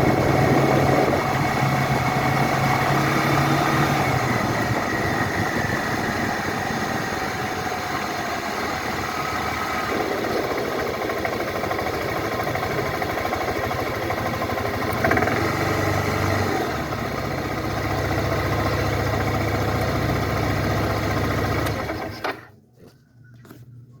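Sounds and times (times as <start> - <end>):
scooter engine running: 0.0 - 22.6.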